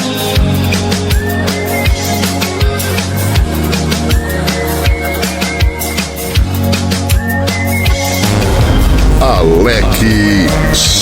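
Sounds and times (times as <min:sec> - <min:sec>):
steady bass: 0:08.2 - 0:11.0
deep kick drum: 0:08.3 - 0:11.0.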